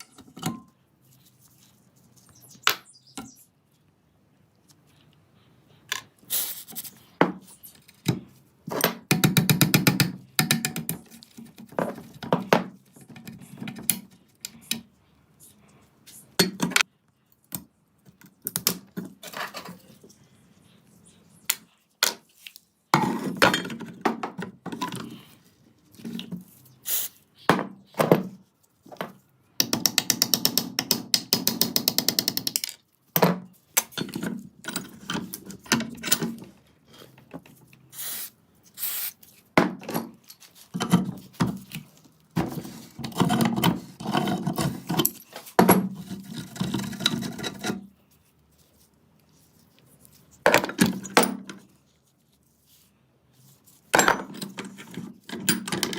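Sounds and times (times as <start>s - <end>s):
metal parts knocking and scraping: 23.0s - 25.2s, 29.0s - 36.6s, 39.7s - 47.9s, 50.4s - 51.7s, 53.9s - 55.9s.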